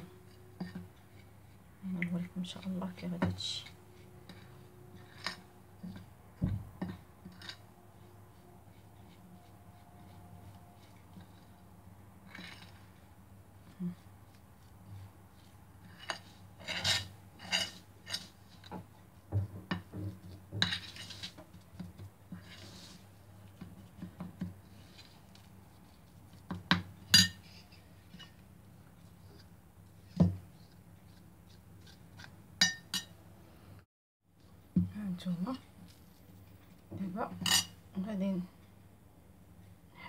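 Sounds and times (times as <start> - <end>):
metal spoon scraping a bowl: 14.3 - 18.7.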